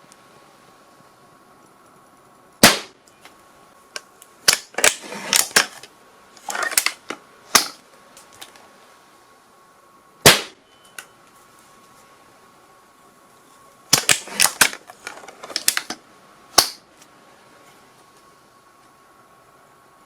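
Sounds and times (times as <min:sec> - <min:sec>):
gunshots: 0:02.6 - 0:03.0, 0:10.3 - 0:10.6.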